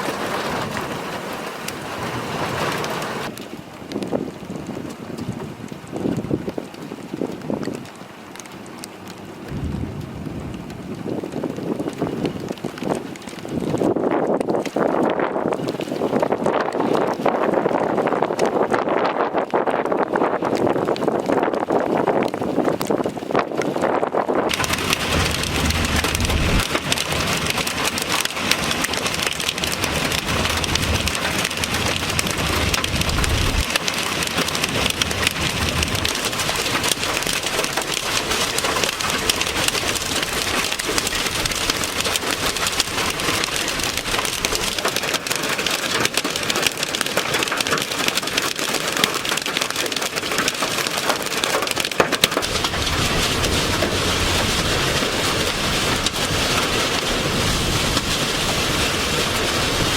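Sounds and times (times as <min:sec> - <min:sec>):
heavy rain pelting: 0:00.0 - 0:59.9
low rumble: 0:09.4 - 0:12.0.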